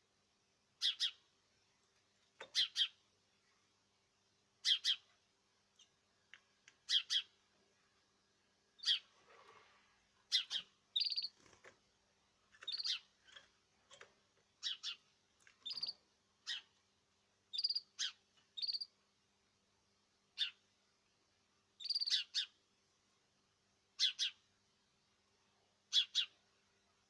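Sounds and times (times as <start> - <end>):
small cage birds chirping: 0.7 - 3.2, 4.5 - 19.0, 20.2 - 20.7, 21.7 - 22.7, 23.9 - 27.0.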